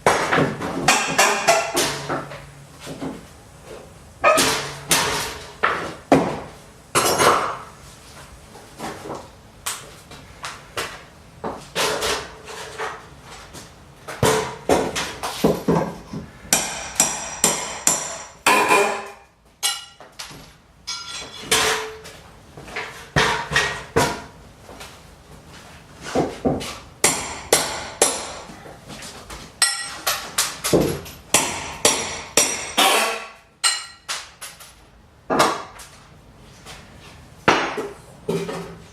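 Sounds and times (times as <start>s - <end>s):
hammer driving nails: 16.5s - 19.9s, 29.6s - 34.6s.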